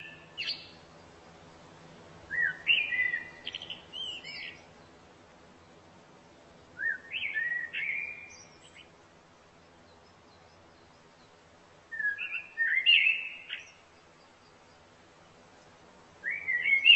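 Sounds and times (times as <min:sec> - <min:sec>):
songbird chirping and whistling: 0:00.0 - 0:00.8, 0:02.3 - 0:04.7, 0:06.8 - 0:08.9, 0:09.9 - 0:14.6, 0:16.2 - 0:16.9.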